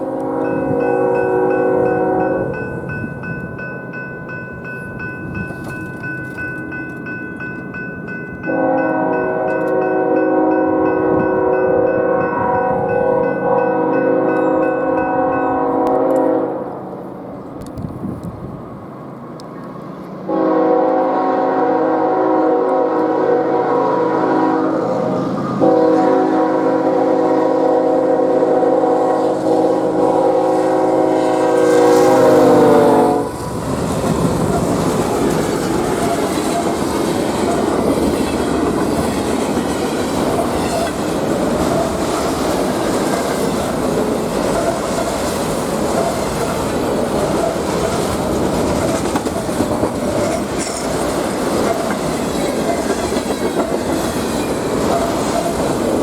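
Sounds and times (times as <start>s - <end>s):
locomotive air horn blasts: 0.0s - 2.6s, 8.4s - 16.9s, 20.3s - 33.4s
train cars rumbling on rails: 0.0s - 56.0s.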